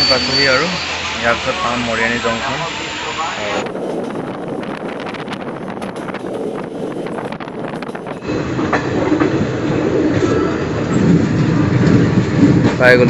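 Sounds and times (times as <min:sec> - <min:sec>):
faint wheel squeals: 0:00.0 - 0:01.0
train rumble: 0:00.0 - 0:13.0
train wheels clattering over rail joints: 0:03.6 - 0:13.0.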